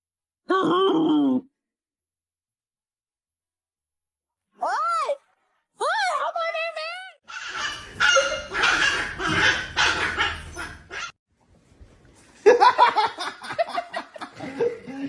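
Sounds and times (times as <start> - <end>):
dog barking: 7.3 - 11.1.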